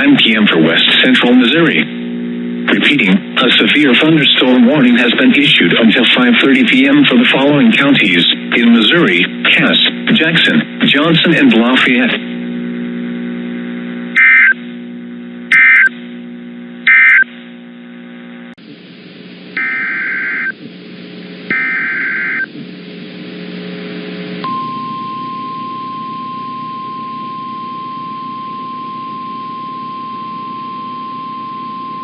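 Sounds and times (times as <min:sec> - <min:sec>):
buzzy data bursts: 0:14.2 - 0:14.6, 0:15.5 - 0:15.9, 0:16.8 - 0:17.3, 0:18.7 - 0:24.5
steady single-pitch alert tone: 0:15.5 - 0:15.9, 0:16.9 - 0:17.3, 0:19.6 - 0:20.6, 0:21.5 - 0:22.5.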